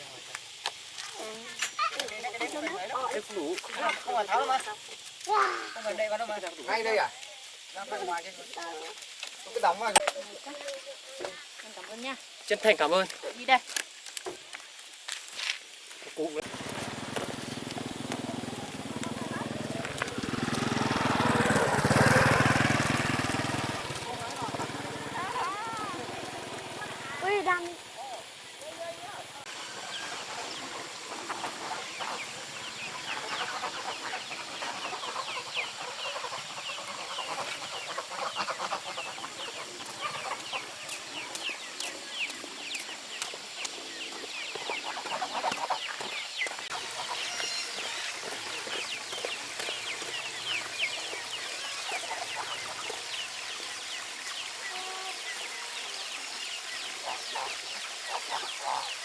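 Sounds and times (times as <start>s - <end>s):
chickens clucking: 16.4s - 42.5s, 43.6s - 54.5s, 57.0s - 59.0s.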